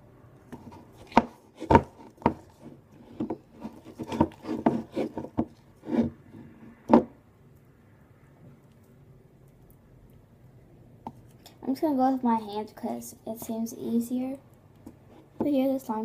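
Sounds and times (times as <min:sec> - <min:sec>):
stirring slime in a bowl: 0:00.4 - 0:07.1.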